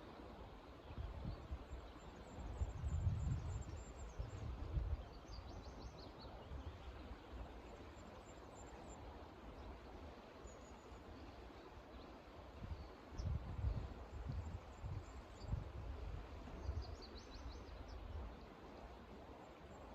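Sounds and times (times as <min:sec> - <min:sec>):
steady background hiss: 0:00.0 - 0:19.9
wind buffeting microphone: 0:02.5 - 0:05.1.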